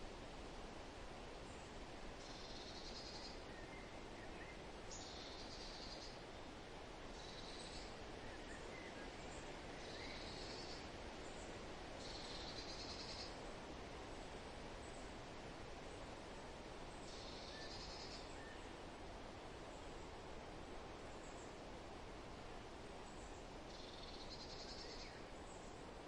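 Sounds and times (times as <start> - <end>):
wind in leaves: 0.0 - 26.0
faint bird chirps: 2.2 - 6.2, 7.1 - 13.4, 17.0 - 18.7, 23.0 - 25.8.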